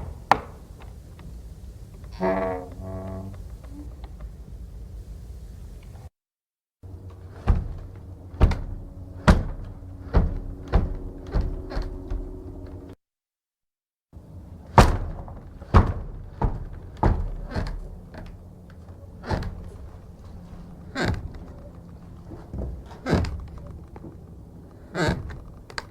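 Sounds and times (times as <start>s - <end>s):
door creaking: 1.9s - 4.3s, 7.0s - 13.0s, 15.0s - 20.0s, 20.6s - 25.9s
wooden door banging against frame: 7.3s - 12.4s, 14.7s - 18.4s.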